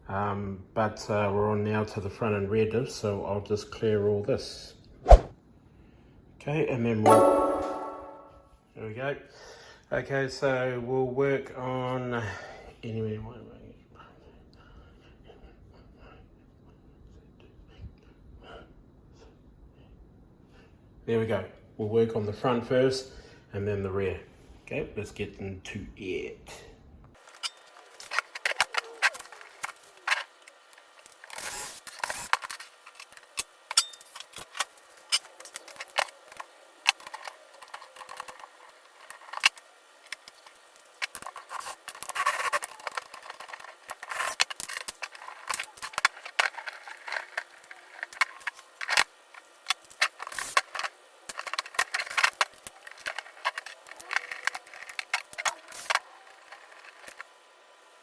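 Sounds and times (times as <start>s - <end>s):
hand tools clicking and scraping: 27.2s - 57.3s
small parts clinking: 27.2s - 57.3s.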